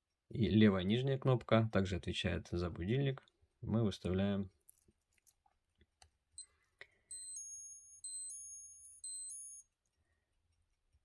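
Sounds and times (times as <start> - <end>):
two-tone alarm beeping: 7.1 - 9.7.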